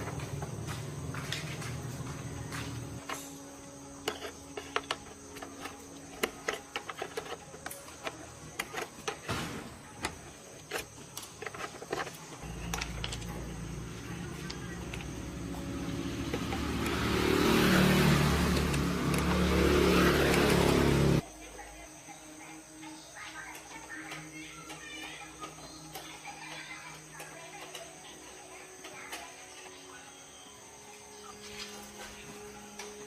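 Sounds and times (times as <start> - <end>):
electric motor humming: 0.0 - 21.2
metal parts clicking: 3.0 - 13.8.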